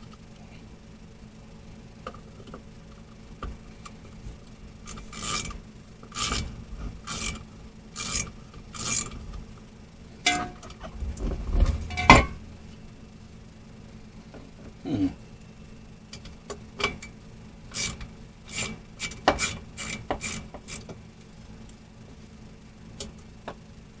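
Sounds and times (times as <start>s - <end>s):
wrench raspy strokes: 4.9s - 9.2s, 17.7s - 20.9s
metal clanks: 10.2s - 10.8s, 11.7s - 12.4s.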